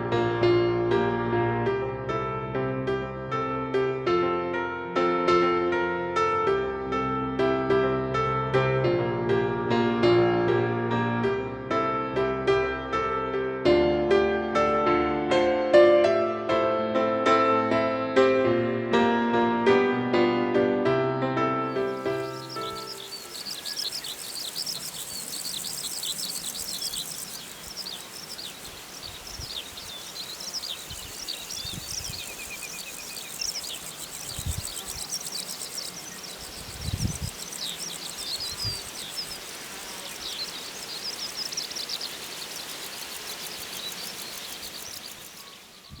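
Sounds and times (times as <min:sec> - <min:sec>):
birds chirping: 0:21.7 - 0:46.0
low descending bird trill: 0:21.7 - 0:46.0.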